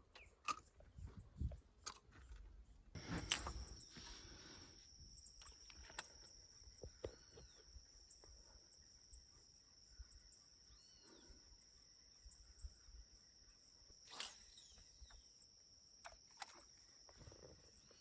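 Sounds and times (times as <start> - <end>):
high-pitched insect drone: 3.0 - 18.0
short arching chirps: 14.0 - 15.4.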